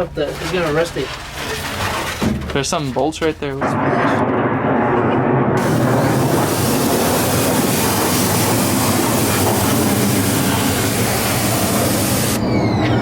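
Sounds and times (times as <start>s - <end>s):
machine rushing noise: 3.6s - 13.0s
high hiss: 5.6s - 12.6s.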